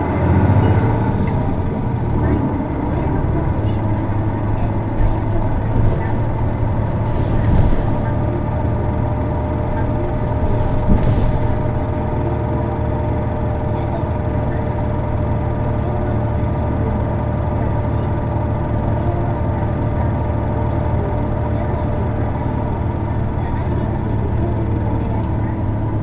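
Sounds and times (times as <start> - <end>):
bus diesel engine droning: 0.0 - 26.0
thump: 10.5 - 11.7.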